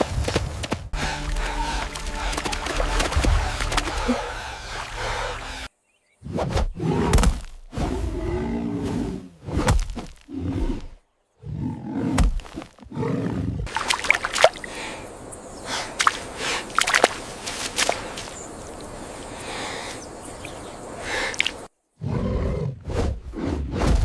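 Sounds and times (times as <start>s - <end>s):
large animal growling: 7.9s - 9.2s.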